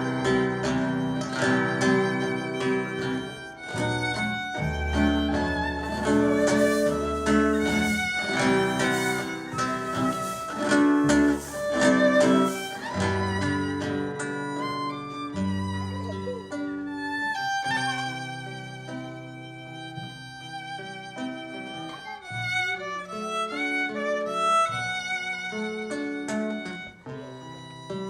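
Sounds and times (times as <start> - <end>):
bowed violin melody: 0.0 - 28.0
plucked guitar: 0.0 - 28.0.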